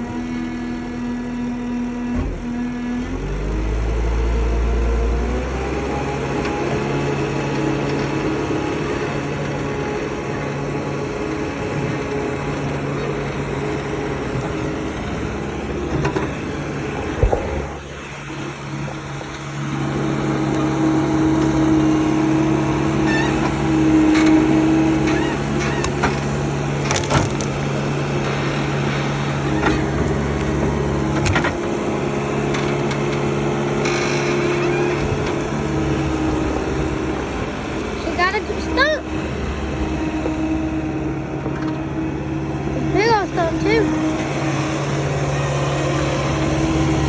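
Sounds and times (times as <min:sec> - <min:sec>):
skid steer engine running hard: 0:00.0 - 0:47.0.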